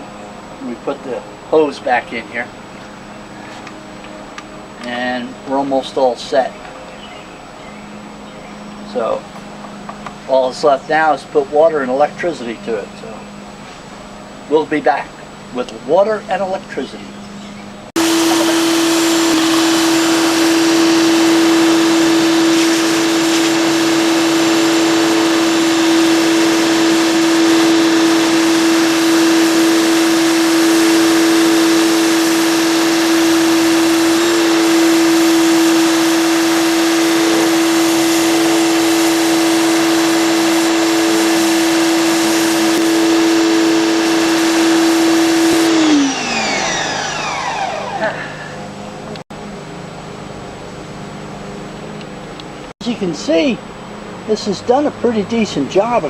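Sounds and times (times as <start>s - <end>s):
pressure washer motor humming: 7.5s - 56.0s
water spray hissing: 18.0s - 46.0s.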